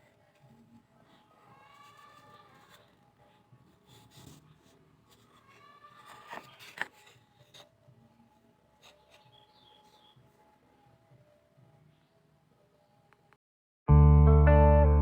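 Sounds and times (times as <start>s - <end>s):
light rubbing: 0.0s - 7.8s.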